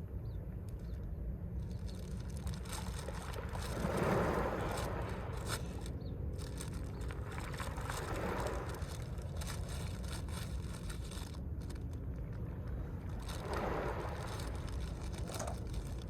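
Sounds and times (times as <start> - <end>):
pebbles clattering: 1.7 - 12.0, 13.2 - 16.0
waves breaking on pebble beach: 2.2 - 11.8, 13.0 - 16.0.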